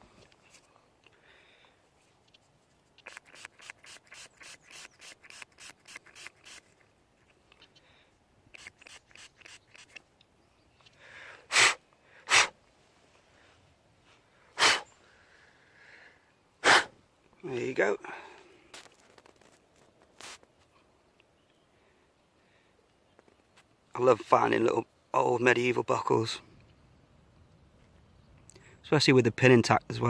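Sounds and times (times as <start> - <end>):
spray bottle squirts: 3.0 - 6.8, 8.5 - 10.0.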